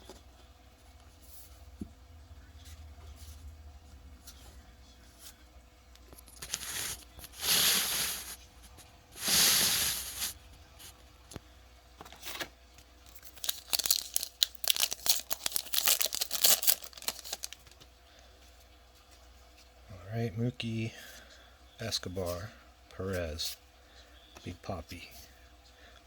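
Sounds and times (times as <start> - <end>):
wrapper crinkling: 6.3 - 8.3, 13.0 - 17.8
wrapper tearing open: 13.1 - 17.8.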